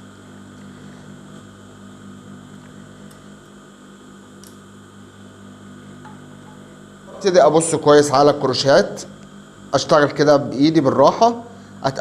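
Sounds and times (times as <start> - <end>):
low electric hum: 0.0 - 12.0.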